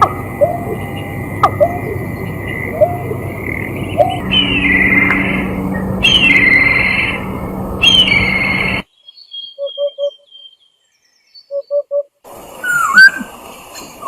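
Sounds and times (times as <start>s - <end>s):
low hooting notes: 0.0s - 8.8s
thin run of high bird notes: 0.0s - 8.8s
low hum: 0.0s - 8.9s
bird trilled call: 0.0s - 10.6s.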